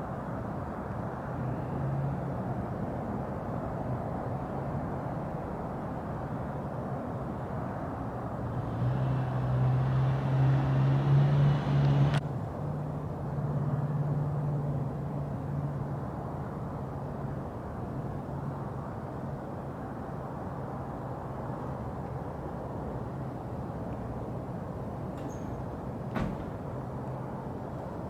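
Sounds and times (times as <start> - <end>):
low street rumble: 7.4 - 18.8
car engine passing by: 8.4 - 12.2.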